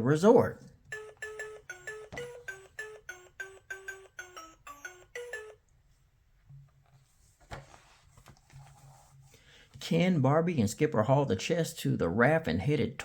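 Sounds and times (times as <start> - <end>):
electronic chime melody: 0.9 - 5.6.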